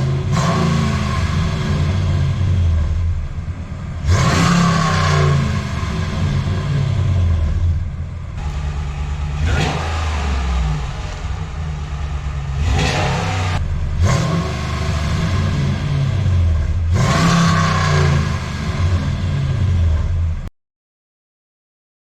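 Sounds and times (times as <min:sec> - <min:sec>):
truck engine accelerating past: 0:08.4 - 0:20.3.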